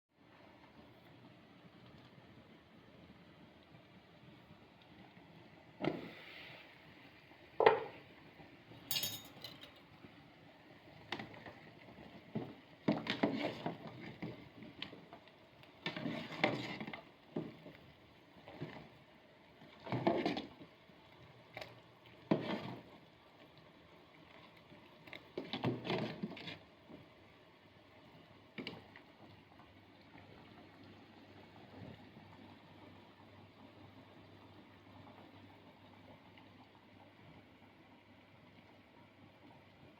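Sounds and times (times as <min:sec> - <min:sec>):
dishes and utensils clattering: 0:08.9 - 0:09.8.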